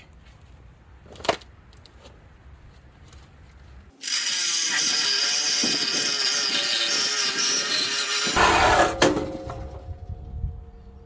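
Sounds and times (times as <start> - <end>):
power tool cutting metal: 3.9 - 9.1.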